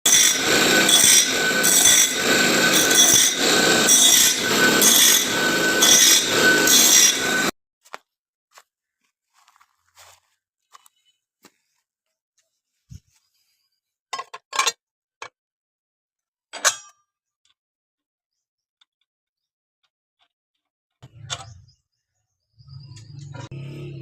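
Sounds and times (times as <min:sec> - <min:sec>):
electric grinder grinding blade: 0:00.0 - 0:07.5, 0:22.8 - 0:24.0.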